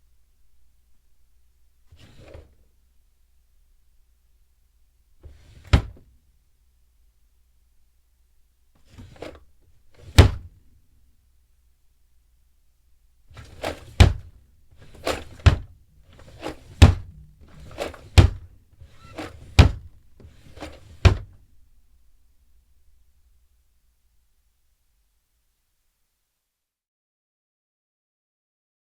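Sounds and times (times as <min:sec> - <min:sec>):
drawer rumbling on slides: 0:01.9 - 0:02.6, 0:05.2 - 0:06.0, 0:08.8 - 0:09.4, 0:13.3 - 0:21.4
wooden drawer slamming: 0:05.3 - 0:06.0, 0:10.0 - 0:10.5, 0:13.4 - 0:21.4.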